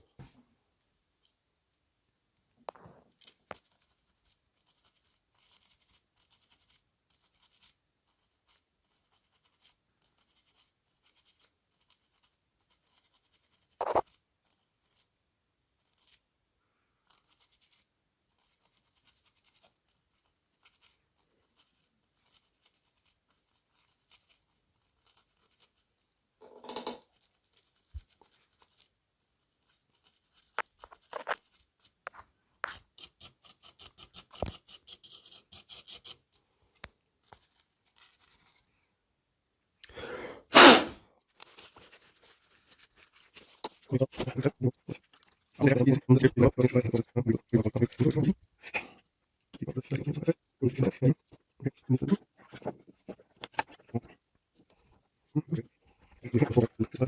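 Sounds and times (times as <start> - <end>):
small hand tools scraping: 32.6 - 36.3, 40.5 - 41.0.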